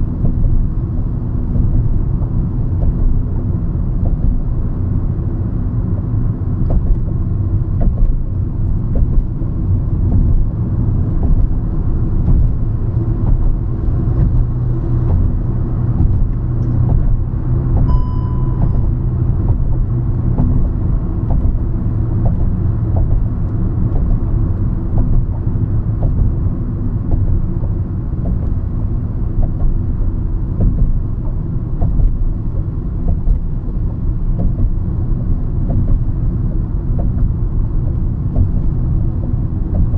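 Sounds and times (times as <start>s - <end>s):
car engine and tyres rumbling: 0.0s - 39.9s
short high beep: 17.9s - 19.0s.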